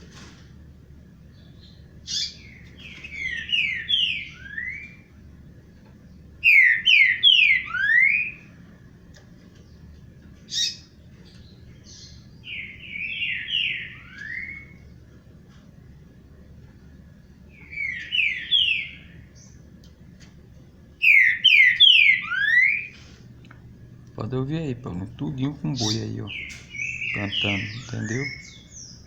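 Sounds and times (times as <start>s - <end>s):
songbird singing falling notes: 9.6s - 14.8s, 17.5s - 19.7s, 25.4s - 29.0s.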